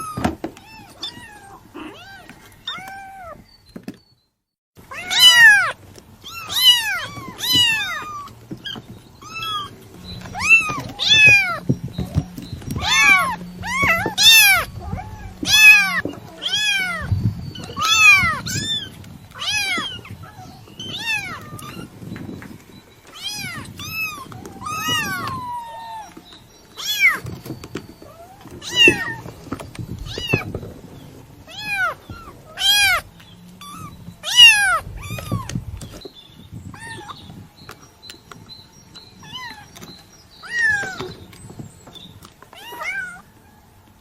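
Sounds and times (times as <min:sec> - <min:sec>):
kitten meowing: 0:00.0 - 0:03.4, 0:04.9 - 0:12.2, 0:12.8 - 0:21.9, 0:23.1 - 0:26.2, 0:28.0 - 0:29.3, 0:31.5 - 0:35.6, 0:36.7 - 0:37.2, 0:40.4 - 0:41.1, 0:42.6 - 0:43.2.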